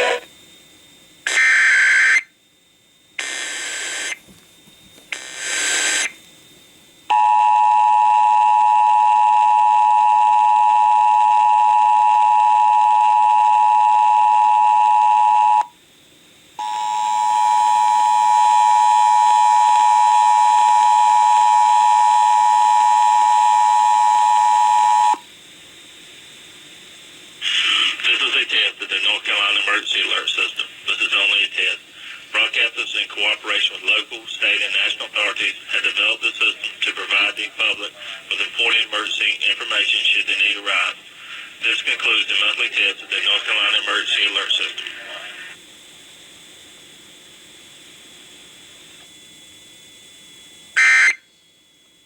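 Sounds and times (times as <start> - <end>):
digital data bursts: 1.2 - 2.3, 3.2 - 4.2, 5.1 - 6.2, 50.8 - 51.2
two-tone alert signal: 50.8 - 51.2.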